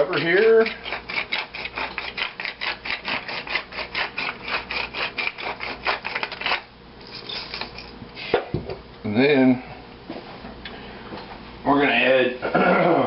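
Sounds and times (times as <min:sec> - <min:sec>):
pepper mill grinding: 0:00.0 - 0:08.0.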